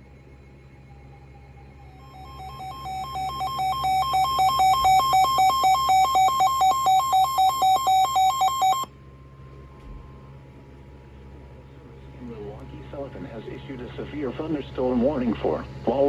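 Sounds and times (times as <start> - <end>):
electronic two-tone beeping alarm: 1.9 - 8.9.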